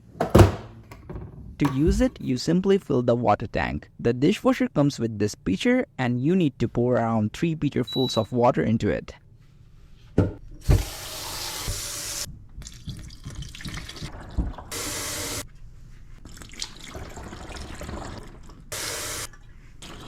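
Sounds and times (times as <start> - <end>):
knocks: 0.0 - 2.2
water pouring into tank: 10.8 - 15.4, 16.2 - 20.0.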